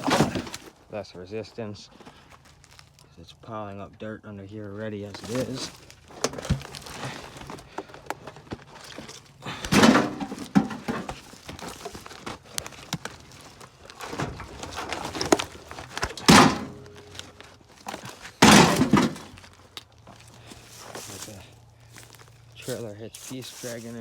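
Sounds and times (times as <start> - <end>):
scrap metal thuds: 0.0 - 0.8, 5.0 - 22.9
metal scraping over dirt: 0.0 - 3.8, 4.6 - 24.0.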